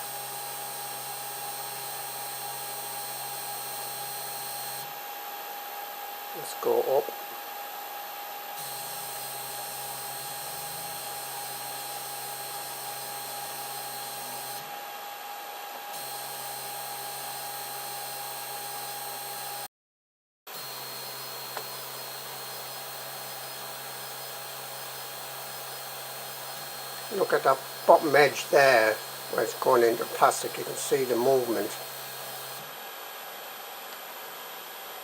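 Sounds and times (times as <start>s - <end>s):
stepper motor hum: 20.6s - 32.7s
fan whirring: 21.5s - 32.6s.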